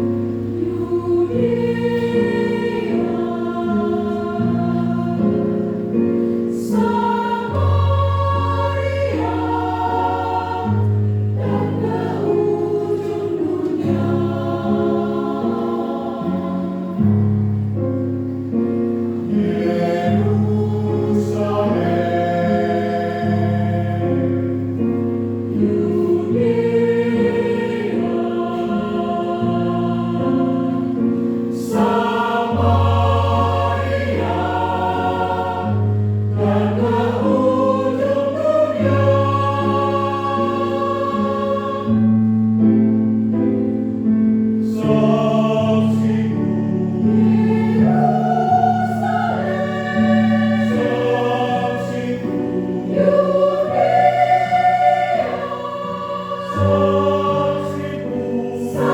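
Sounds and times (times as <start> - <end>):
choir singing a hymn: 0.0 - 58.9.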